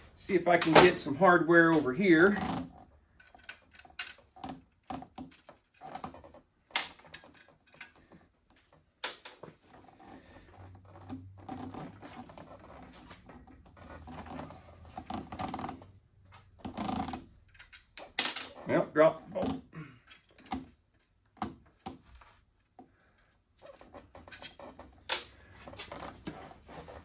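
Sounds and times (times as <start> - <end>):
metal hardware clicking and clinking: 3.1 - 4.4, 6.7 - 8.1, 17.4 - 18.7, 20.0 - 21.2, 24.2 - 25.4.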